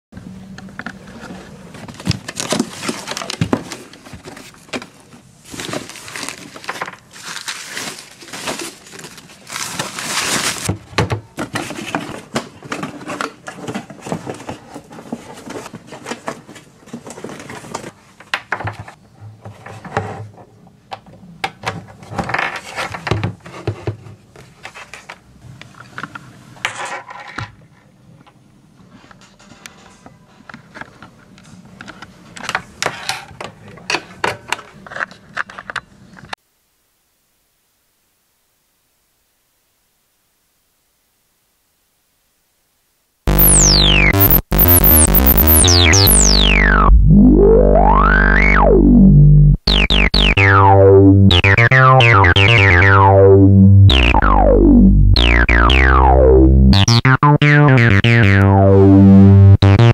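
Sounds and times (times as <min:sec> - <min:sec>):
low synthesizer notes: 0:43.3 - 0:59.9
synthesizer falling sweep: 0:43.3 - 0:59.9
synthesizer glitchy crackling: 0:43.3 - 0:59.9.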